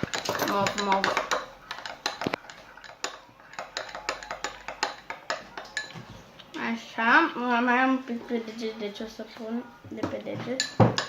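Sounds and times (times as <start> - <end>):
spoon tapping against container: 0.0 - 6.0.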